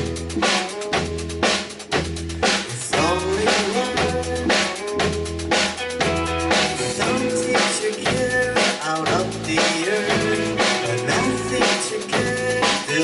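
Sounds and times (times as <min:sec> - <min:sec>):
bass drum and snare hits: 0:00.0 - 0:13.0
bass guitar: 0:00.0 - 0:13.0
guitar: 0:00.0 - 0:13.0
keyboard: 0:00.0 - 0:13.0.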